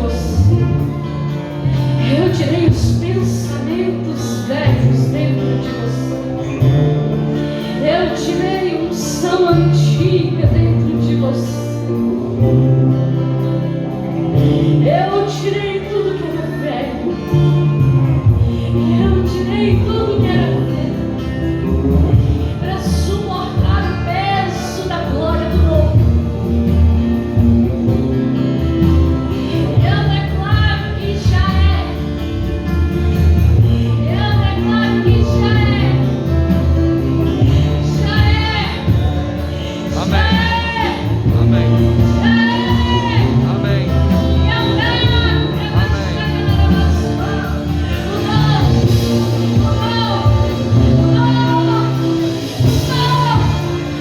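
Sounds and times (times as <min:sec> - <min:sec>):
worship band playing: 0:00.0 - 0:54.0
indistinct singing: 0:33.0 - 0:54.0.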